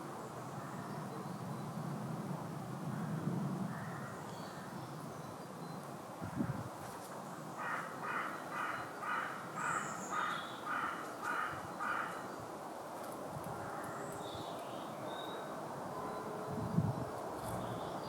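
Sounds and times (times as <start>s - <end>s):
bird calls: 7.6s - 12.4s.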